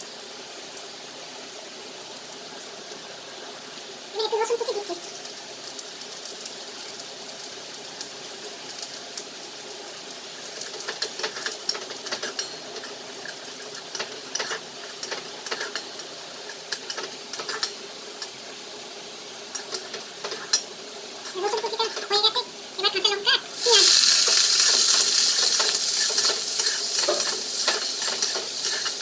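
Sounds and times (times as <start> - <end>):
garlic sizzling in hot oil: 4.1 - 22.7, 23.4 - 29.0
spatula scraping a pan: 23.6 - 29.0.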